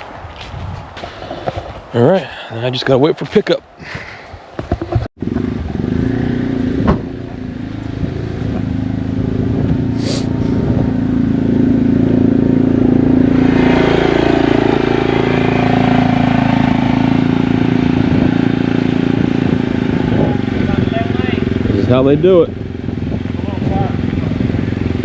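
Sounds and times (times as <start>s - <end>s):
vehicle engine running: 5.2s - 25.0s.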